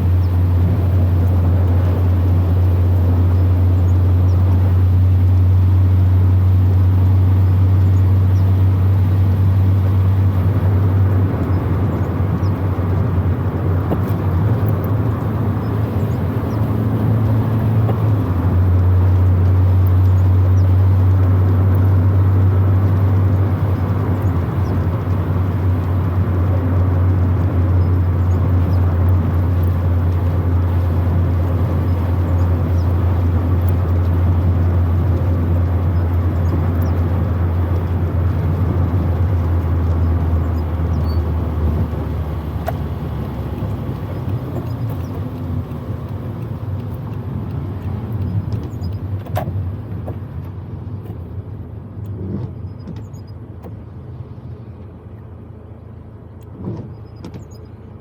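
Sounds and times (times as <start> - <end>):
car engine drone: 0.0 - 58.0
road noise: 0.0 - 58.0
faint clicks: 31.7 - 51.2.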